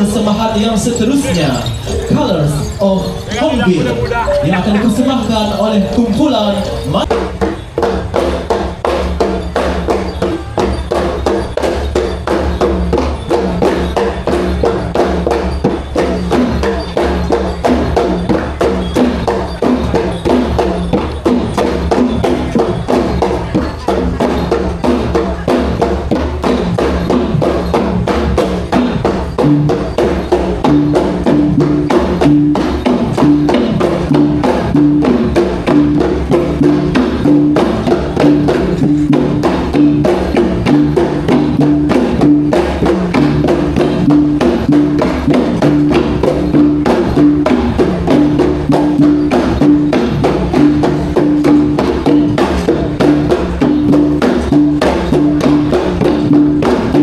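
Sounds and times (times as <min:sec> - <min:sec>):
drums in fast strokes: 0:00.0 - 0:57.0.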